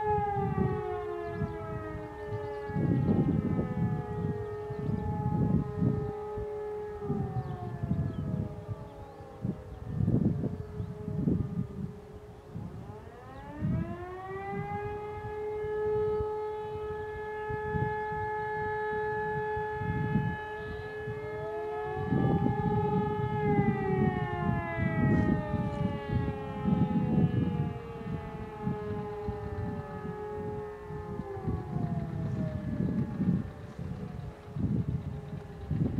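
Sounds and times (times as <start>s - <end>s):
electromechanical siren wailing: 0.0s - 35.9s
second siren rising and falling: 0.0s - 35.9s
low rumbling noise: 14.5s - 35.9s.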